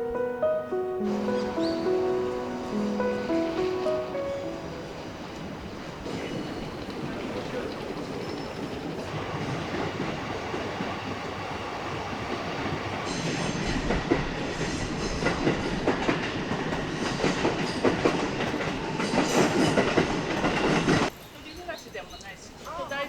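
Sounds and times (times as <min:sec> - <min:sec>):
train wheels clattering over rails: 0:05.2 - 0:21.2.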